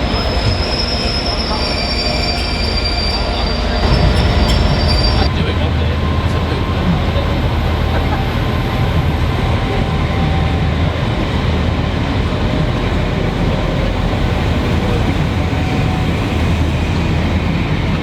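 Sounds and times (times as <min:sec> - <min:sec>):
train wheel squeal: 0:00.0 - 0:11.0, 0:13.2 - 0:17.2
train rumbling on rails: 0:00.0 - 0:18.0.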